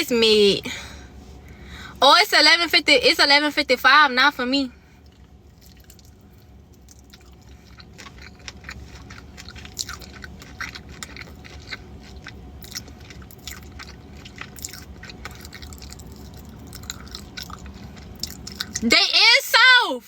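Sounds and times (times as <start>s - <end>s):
person chewing with mouth open: 5.0s - 18.8s.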